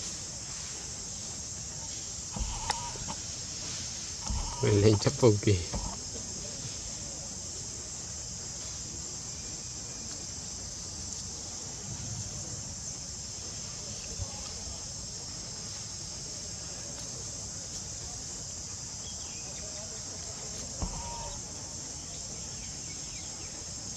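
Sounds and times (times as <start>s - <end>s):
insect chorus: 0.0s - 23.9s.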